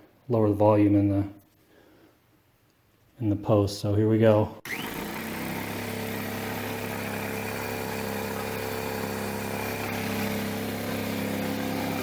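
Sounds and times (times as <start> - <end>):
air compressor running: 4.7 - 12.0.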